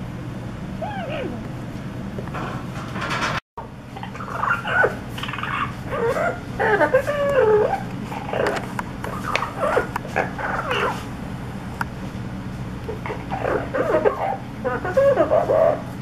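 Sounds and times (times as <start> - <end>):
parrot calling: 4.0 - 11.1, 12.9 - 16.0.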